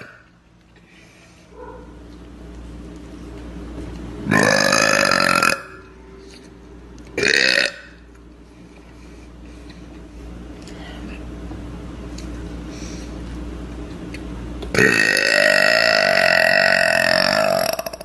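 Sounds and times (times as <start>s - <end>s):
woman burping: 14.8s - 18.0s.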